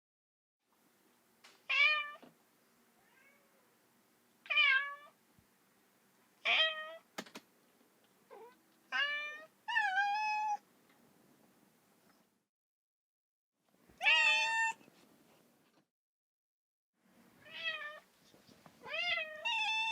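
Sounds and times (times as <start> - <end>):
cat meowing: 3.0 - 3.6, 4.5 - 5.2, 8.3 - 10.6, 14.0 - 14.8, 17.4 - 18.0, 18.8 - 19.9.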